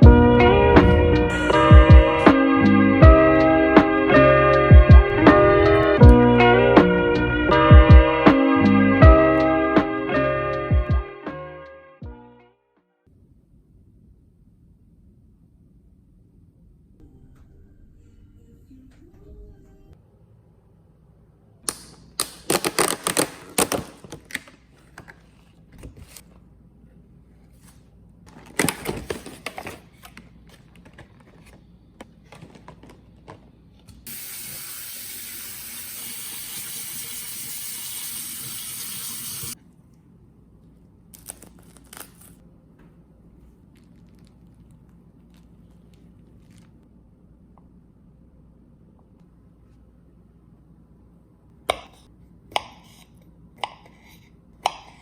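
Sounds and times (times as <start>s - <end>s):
objects clattering: 28.3s - 31.6s
water running from a tap: 34.1s - 39.6s.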